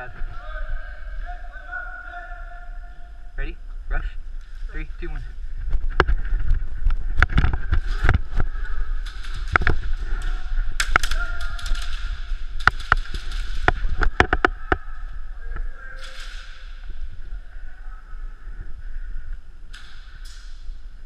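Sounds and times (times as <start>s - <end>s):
airsoft guns firing: 8.9s - 14.8s.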